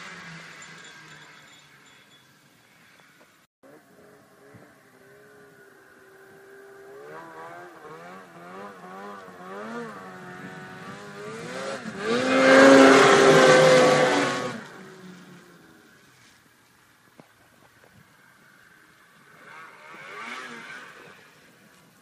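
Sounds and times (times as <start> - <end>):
snowmobile engine revving: 3.7 - 15.9, 19.1 - 21.8.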